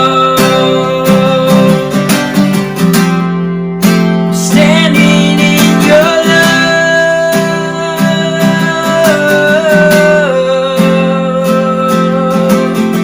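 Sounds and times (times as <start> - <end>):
acoustic guitar strumming: 0.0 - 13.0.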